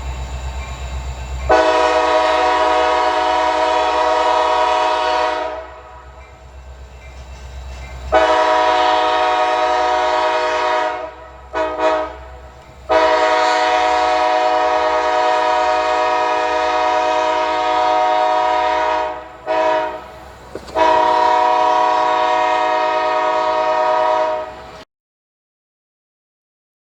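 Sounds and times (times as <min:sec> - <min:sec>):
locomotive low rumble: 0:00.0 - 0:24.8
locomotive air horn blasts: 0:01.5 - 0:06.2, 0:08.1 - 0:24.8.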